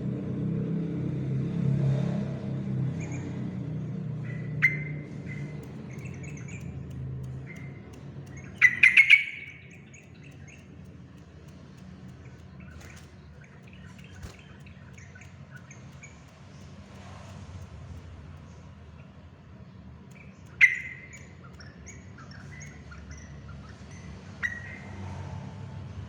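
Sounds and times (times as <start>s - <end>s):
steady low hum: 2.6s - 24.4s
soft bird chirps: 2.9s - 25.1s
bird calling: 4.2s - 11.0s, 12.1s - 16.7s, 20.1s - 23.4s.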